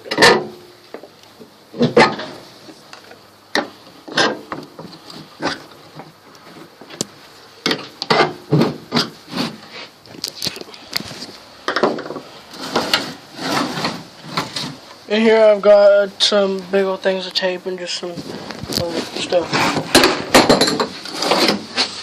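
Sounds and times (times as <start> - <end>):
toolbox knocks and rattles: 19.8 - 21.0.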